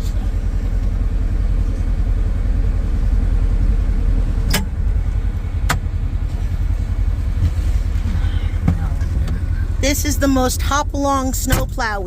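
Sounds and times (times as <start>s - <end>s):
engine low rumble: 0.0s - 12.0s.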